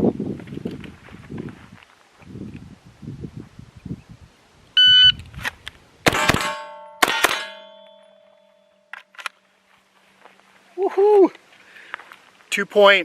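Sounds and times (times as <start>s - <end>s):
shot timer beep: 4.8s - 5.2s
loud gunshots: 6.1s - 7.6s
steel target ringing: 6.1s - 8.9s.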